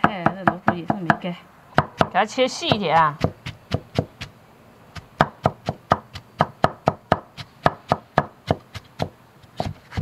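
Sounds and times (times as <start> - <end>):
knife chopping on cutting board: 2.7 - 4.3, 5.0 - 10.0.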